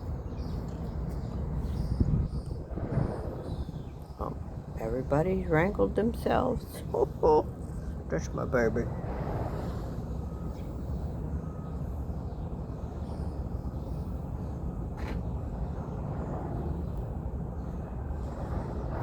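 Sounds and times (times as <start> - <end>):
low outdoor rumble: 0.0 - 19.0.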